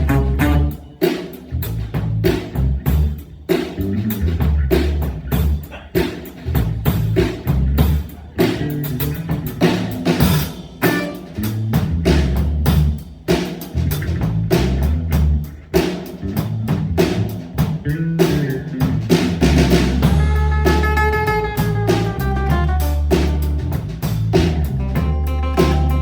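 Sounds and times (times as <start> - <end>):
guitar: 0.0 - 12.8, 13.4 - 26.0
drum kit beat: 0.0 - 26.0
walking bass line: 0.0 - 26.0.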